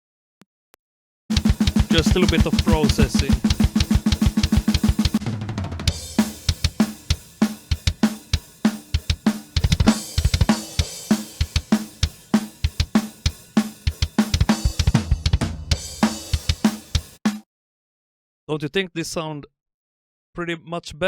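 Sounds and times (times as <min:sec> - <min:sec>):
cymbal crash: 0:01.3 - 0:17.2
hi-hat and cymbals: 0:01.3 - 0:17.4
kick drum strokes: 0:01.3 - 0:17.4
snare drum hits: 0:01.3 - 0:17.4.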